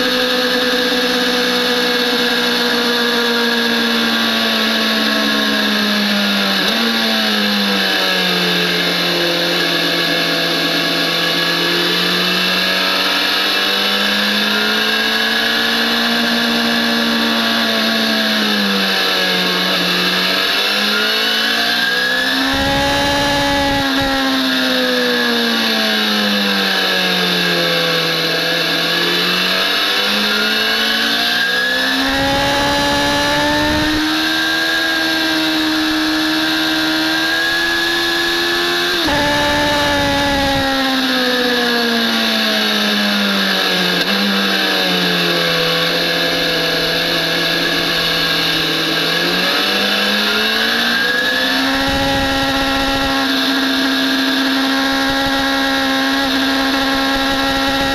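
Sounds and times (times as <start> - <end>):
motorcycle engine accelerating: 0.0 - 57.9
wind noise: 22.5 - 24.2, 38.9 - 40.8, 51.7 - 53.2.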